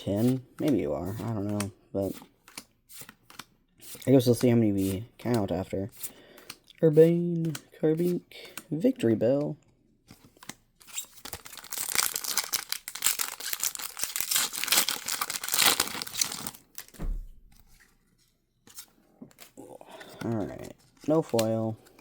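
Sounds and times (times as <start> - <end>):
foil wrapper tearing and crinkling: 10.9 - 17.0
soft thump: 17.0 - 17.5.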